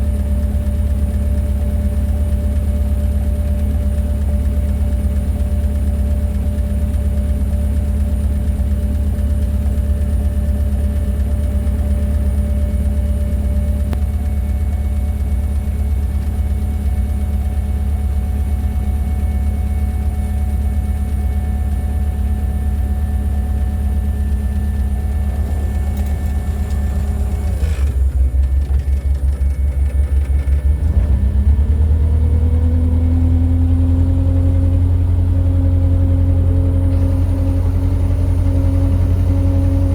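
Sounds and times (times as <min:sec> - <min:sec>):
tug engine idling: 0:00.1 - 0:30.9.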